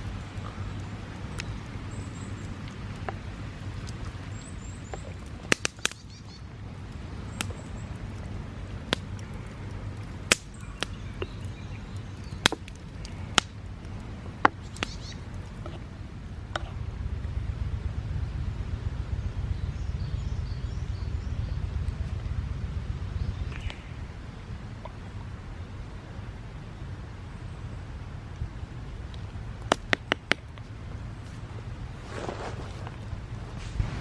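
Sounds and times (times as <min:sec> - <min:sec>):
campfire crackling and popping: 0:00.0 - 0:34.0
faint bird chirps: 0:10.5 - 0:12.4, 0:14.6 - 0:15.3, 0:23.1 - 0:25.2.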